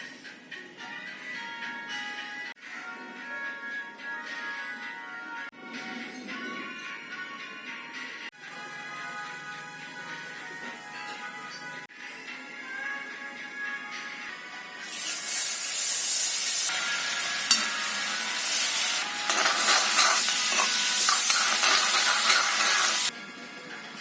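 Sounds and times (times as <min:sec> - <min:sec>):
food sizzling in a hot pan: 0:14.8 - 0:23.1.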